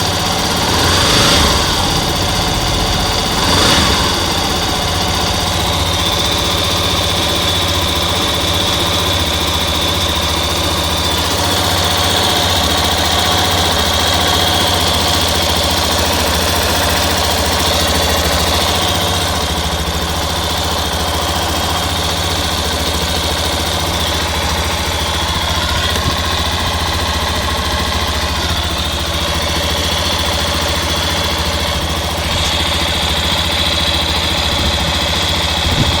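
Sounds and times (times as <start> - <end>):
motorcycle engine idling: 0.0 - 36.0
high-pitched whine: 0.4 - 7.1.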